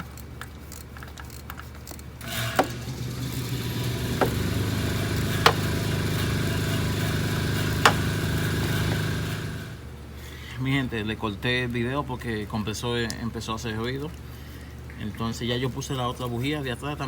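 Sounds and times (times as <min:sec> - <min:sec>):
motor vehicle engine running: 0:02.2 - 0:09.8.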